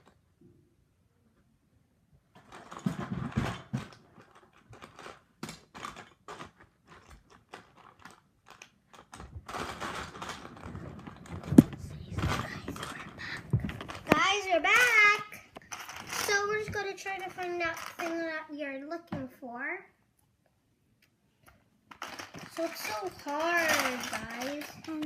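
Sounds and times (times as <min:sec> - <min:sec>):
handling clicks and knocks: 0:02.3 - 0:18.2.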